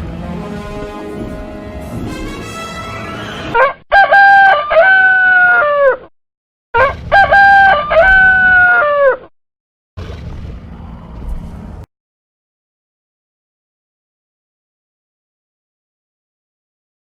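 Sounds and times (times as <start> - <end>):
rooster crowing: 3.2 - 6.0, 6.8 - 9.2
quiet rumbling noise: 10.0 - 11.9.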